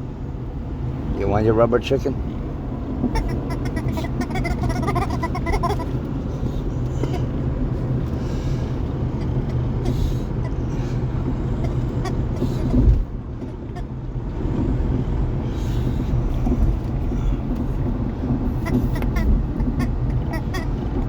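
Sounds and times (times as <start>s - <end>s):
steady low rumble: 0.0s - 21.0s
rubber squeak toy squeaking: 3.2s - 6.0s, 11.6s - 13.9s, 18.5s - 20.8s.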